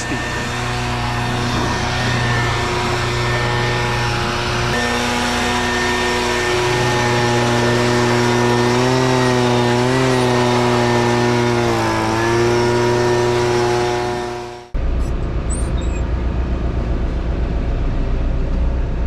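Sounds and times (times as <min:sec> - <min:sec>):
gas-powered blower running: 0:00.0 - 0:14.8.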